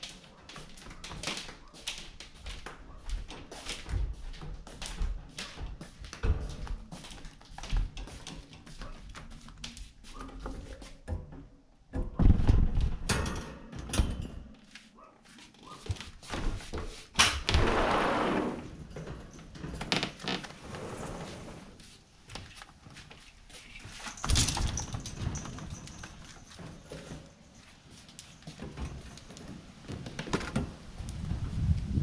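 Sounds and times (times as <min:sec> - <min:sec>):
birdcage knocking and rustling: 0:10.2 - 0:14.6, 0:24.0 - 0:27.6.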